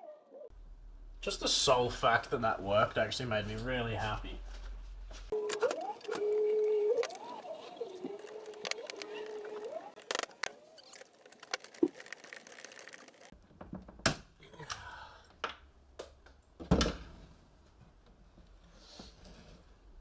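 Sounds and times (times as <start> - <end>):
tools and parts being handled: 5.3 - 13.3.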